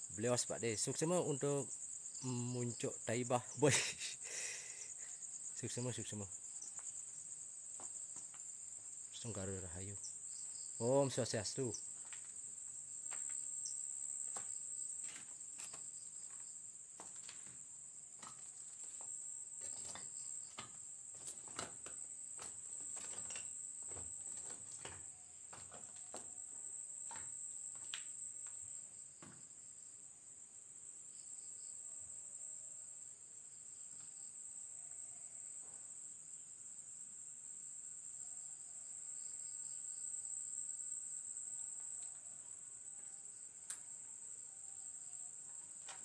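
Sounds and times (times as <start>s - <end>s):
crickets chirring: 0.0s - 46.0s
light clicks and knocks: 19.6s - 26.3s.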